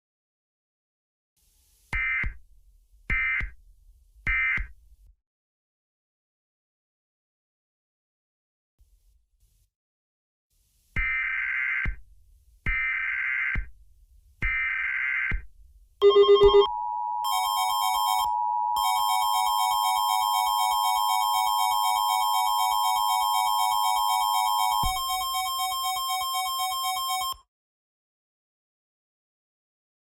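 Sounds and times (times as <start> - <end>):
pulsing high tones: 16.0 - 26.2
two-tone attention signal: 16.0 - 27.4.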